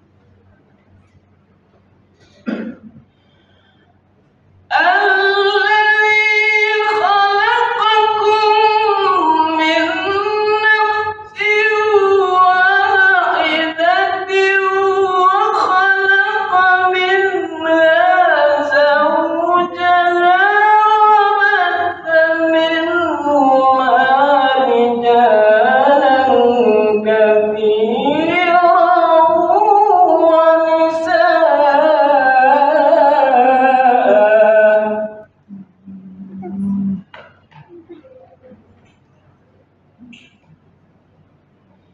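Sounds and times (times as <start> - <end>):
man reciting melodically: 4.7 - 37.2.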